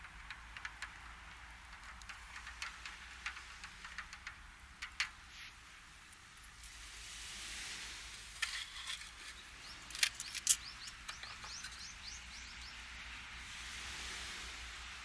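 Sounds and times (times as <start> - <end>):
steady hiss: 0.0 - 15.0
bird chirping rapidly: 9.4 - 12.8.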